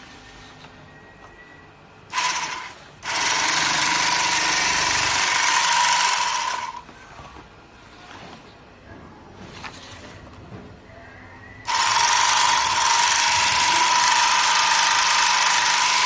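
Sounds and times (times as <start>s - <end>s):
sewing machine whining: 2.1s - 6.9s, 11.6s - 16.0s.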